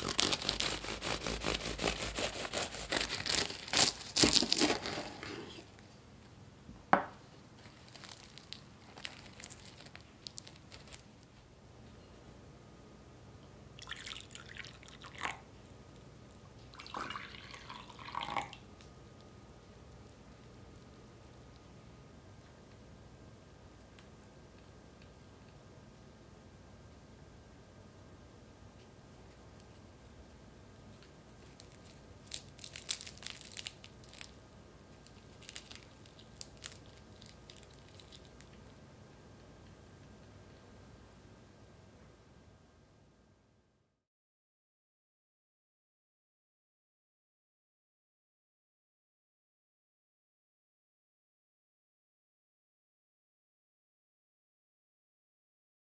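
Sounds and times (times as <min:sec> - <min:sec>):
pastry crackling and crunching: 0:00.0 - 0:05.6, 0:07.6 - 0:11.3, 0:30.9 - 0:38.8.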